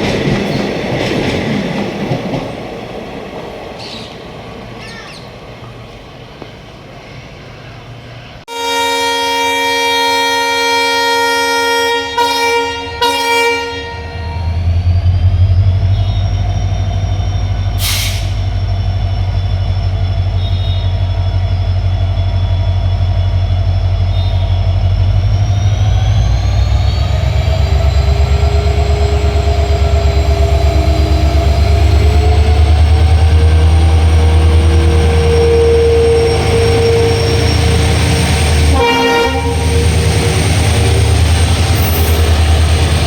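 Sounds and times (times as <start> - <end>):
diesel locomotive engine humming: 0.0 - 43.0
locomotive horn: 8.5 - 14.8, 34.7 - 37.8, 38.6 - 40.2
brief hiss: 17.8 - 18.4.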